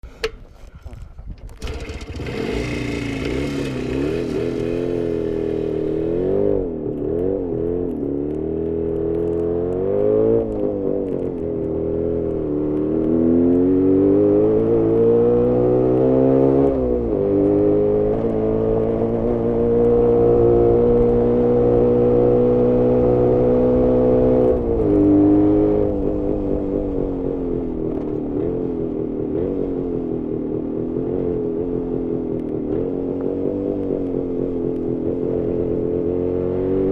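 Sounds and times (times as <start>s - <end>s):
two-stroke motorcycle engine: 0.1s - 6.6s.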